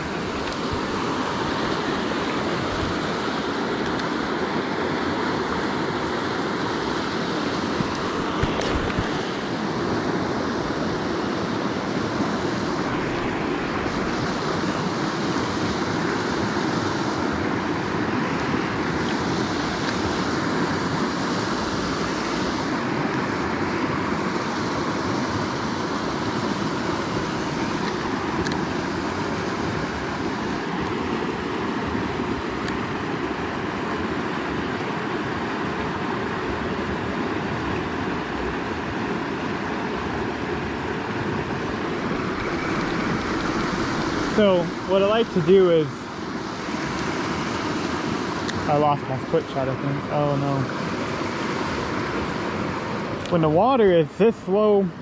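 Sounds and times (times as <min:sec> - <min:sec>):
river water rushing: 0:00.0 - 0:55.0.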